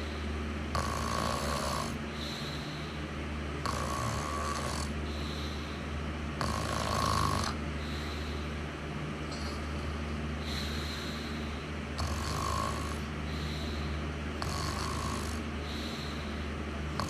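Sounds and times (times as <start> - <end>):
person snoring: 0.0 - 3.0, 3.6 - 5.8, 6.4 - 8.5, 9.3 - 17.0
steady low hum: 0.0 - 17.0.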